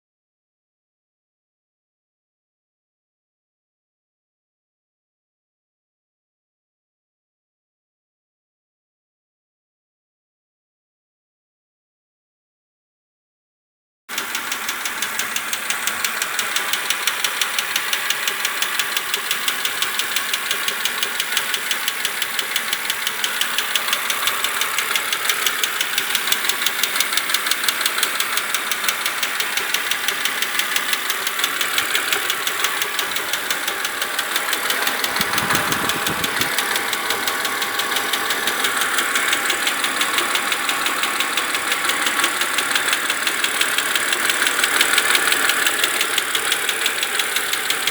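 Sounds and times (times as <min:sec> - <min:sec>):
car engine idling: 0:14.1 - 0:47.9
rapid engine ticking: 0:14.1 - 0:47.9.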